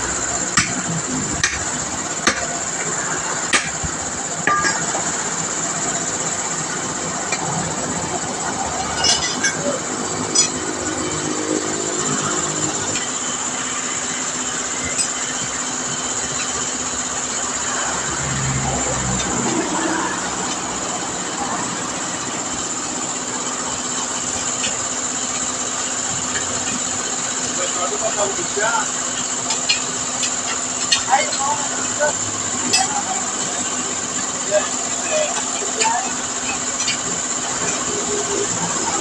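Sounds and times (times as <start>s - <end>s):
sharp metallic knocks: 0.6s - 2.5s.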